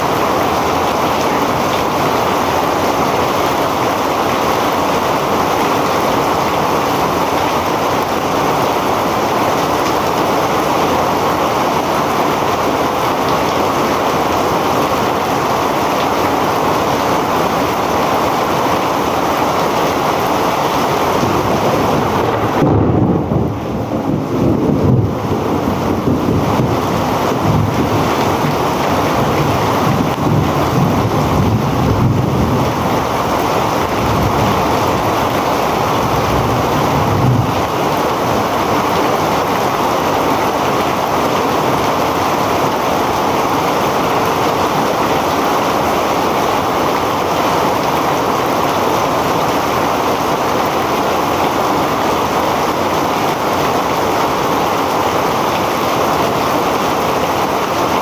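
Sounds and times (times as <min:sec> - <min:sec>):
heavy rain pouring: 0:00.0 - 0:58.0
wind rumbling on microphone: 0:00.1 - 0:45.7.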